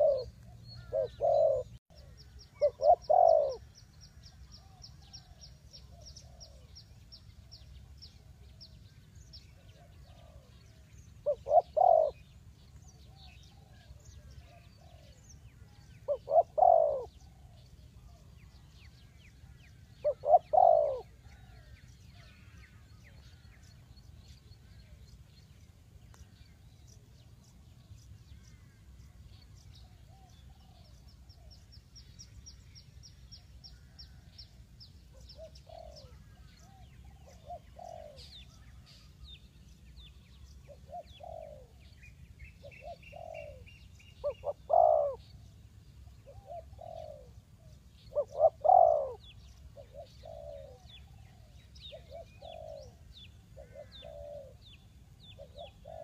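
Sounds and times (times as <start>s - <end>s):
doves cooing: 0.0s - 3.7s, 9.6s - 12.2s, 16.1s - 18.2s, 20.0s - 21.7s, 35.3s - 38.4s, 40.7s - 41.8s, 42.6s - 45.4s, 46.2s - 54.7s, 55.3s - 56.0s
small birds chirping: 0.0s - 56.0s.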